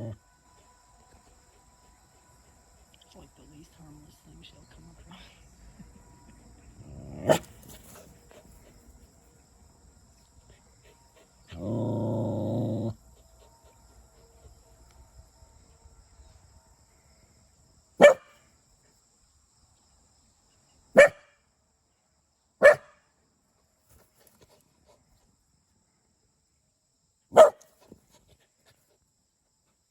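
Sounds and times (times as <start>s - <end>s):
dog growling: 6.7s - 7.6s, 11.5s - 13.0s
dog barking: 7.2s - 7.5s, 18.0s - 18.4s, 21.0s - 21.3s, 22.6s - 23.0s, 27.3s - 27.7s.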